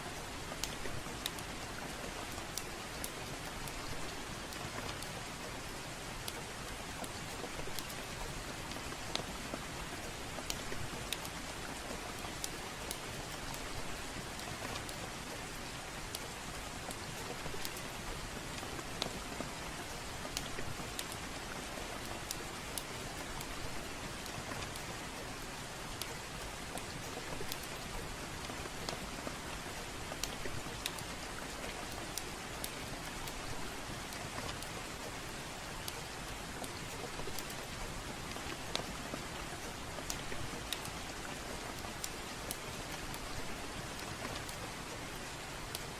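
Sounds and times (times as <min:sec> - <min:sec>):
steady rainfall: 0:00.0 - 0:45.9
wood fire crackling and popping: 0:35.6 - 0:45.9.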